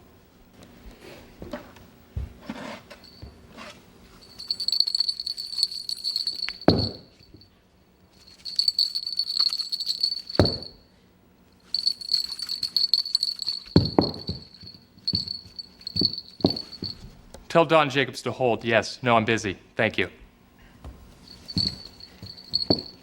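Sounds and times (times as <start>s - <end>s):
small bell jingling: 3.0s - 7.5s, 8.1s - 10.8s, 11.6s - 17.1s, 21.2s - 23.0s.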